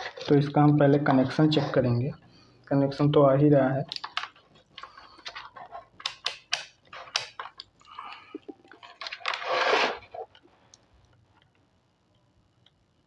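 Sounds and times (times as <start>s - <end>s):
test probes clicking and crackling: 3.8s - 9.2s.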